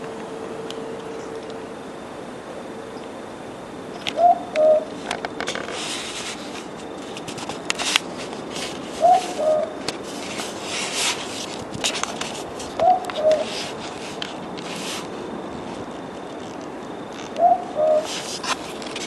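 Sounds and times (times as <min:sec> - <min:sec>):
owl two-note call: 0:04.2 - 0:04.9.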